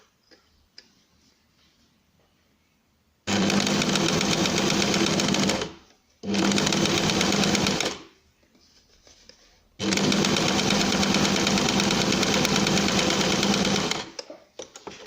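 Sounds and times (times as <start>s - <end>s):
sewing machine stitching: 3.3s - 8.0s, 9.8s - 14.2s.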